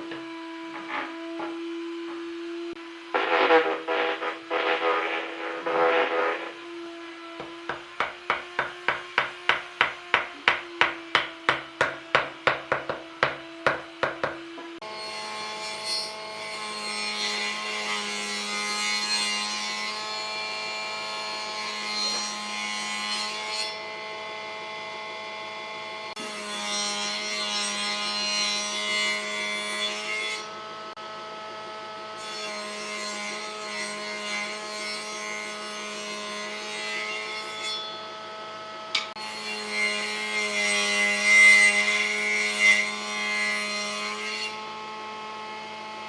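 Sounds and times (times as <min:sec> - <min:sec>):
power tool running with hiss: 0:02.2 - 0:07.8
steady hum: 0:02.4 - 0:06.6
rhythmic sawing strokes on wood: 0:03.1 - 0:23.8.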